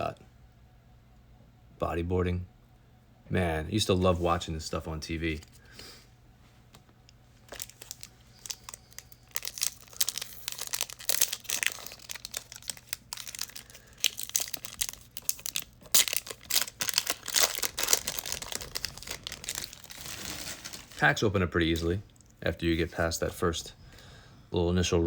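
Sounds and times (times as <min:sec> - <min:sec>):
wrapper ripping and crinkling: 0:07.4 - 0:21.1.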